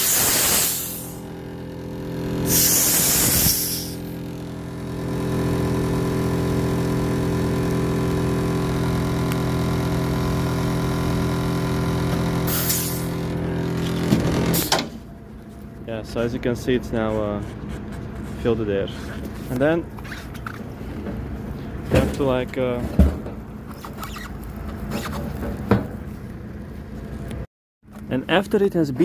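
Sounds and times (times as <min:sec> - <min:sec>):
loud bursts of hissing air: 0:00.0 - 0:01.5, 0:02.3 - 0:04.3, 0:12.4 - 0:13.3, 0:14.5 - 0:14.9
air compressor running: 0:00.0 - 0:26.2.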